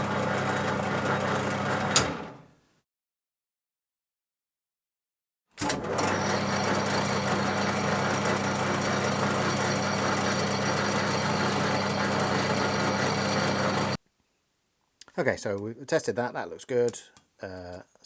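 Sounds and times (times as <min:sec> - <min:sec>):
metal lathe whirring: 0:05.6 - 0:14.0.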